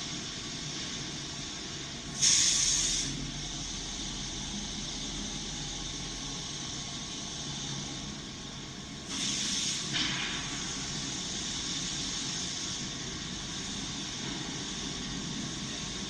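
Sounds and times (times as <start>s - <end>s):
welding machine hiss and hum: 0.0s - 16.0s
loud hiss burst: 2.1s - 4.1s, 9.0s - 15.8s.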